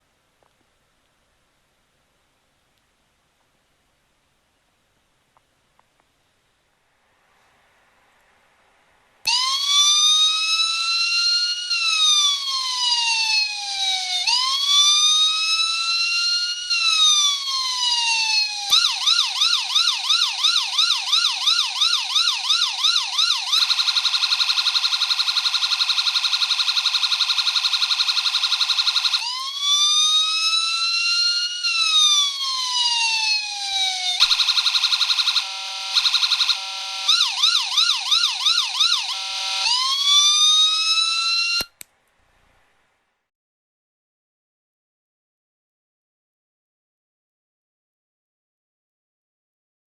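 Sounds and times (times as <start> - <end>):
electronic police siren from small speaker: 9.3 - 41.8.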